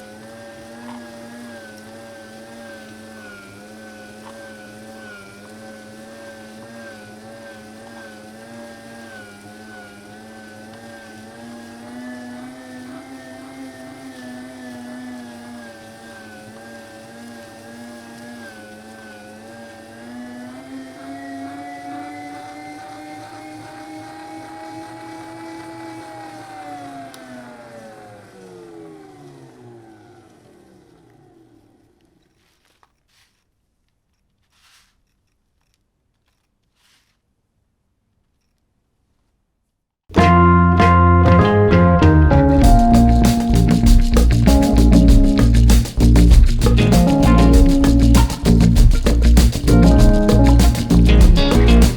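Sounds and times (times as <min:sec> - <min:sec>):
meat grinder motor humming: 0:00.0 - 0:32.1.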